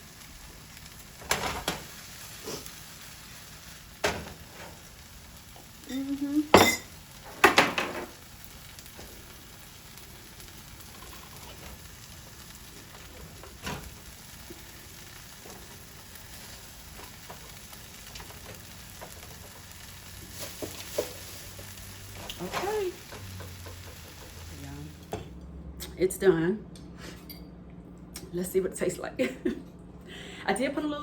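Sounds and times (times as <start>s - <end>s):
omelet sizzling in a pan: 0.0s - 25.2s.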